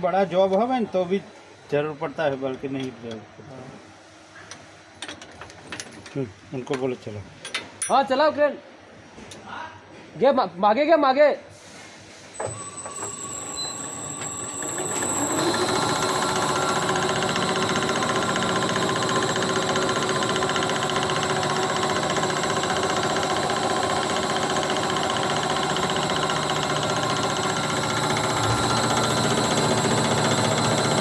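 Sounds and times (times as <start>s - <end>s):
crane motor and gearbox whirring: 12.5s - 31.0s.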